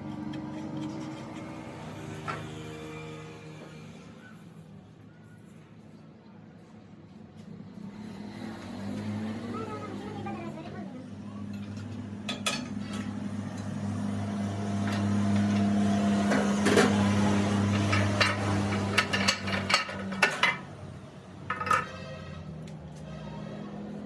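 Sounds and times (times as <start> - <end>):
metal parts clinking: 17.7 - 20.7, 21.5 - 22.2.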